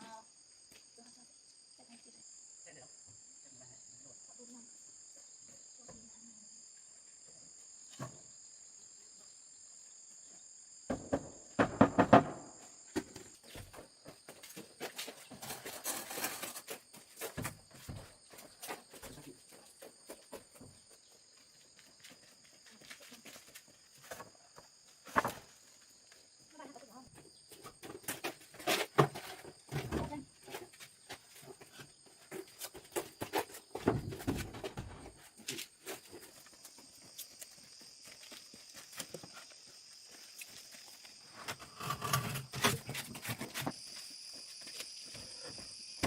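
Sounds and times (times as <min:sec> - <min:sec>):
insects trilling: 0:00.0 - 0:46.0
wooden knocks and clatter: 0:10.9 - 0:13.8, 0:31.6 - 0:35.2.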